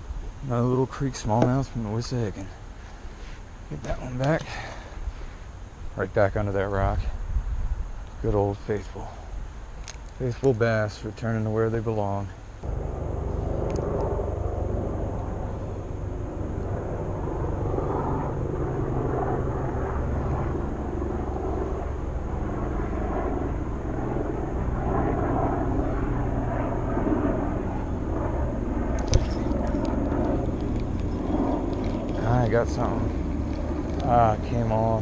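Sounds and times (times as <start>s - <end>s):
wind rumble on microphone: 5.8s - 10.4s, 12.3s - 35.0s.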